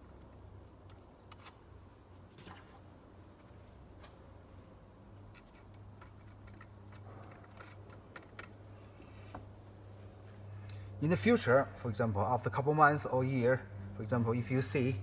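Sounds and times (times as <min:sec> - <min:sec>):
low steady hum: 0:00.0 - 0:15.0
small metal parts clicking: 0:05.2 - 0:09.0.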